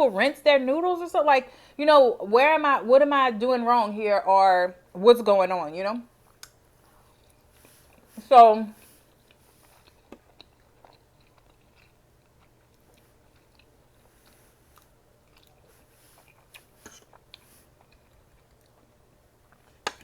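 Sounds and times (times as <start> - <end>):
person chewing: 6.3 - 8.2, 8.8 - 20.0.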